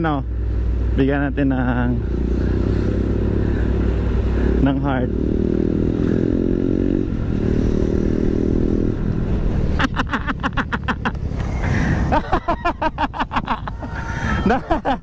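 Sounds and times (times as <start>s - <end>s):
motorcycle engine running: 0.0s - 12.2s.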